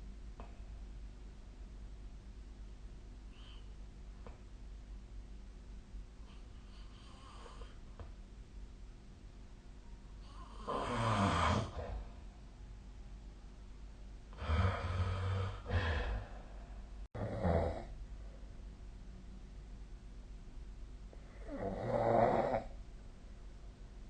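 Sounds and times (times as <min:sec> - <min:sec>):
person snoring: 0:06.7 - 0:07.8, 0:10.3 - 0:12.0, 0:14.4 - 0:16.4, 0:17.2 - 0:17.9, 0:21.3 - 0:22.7.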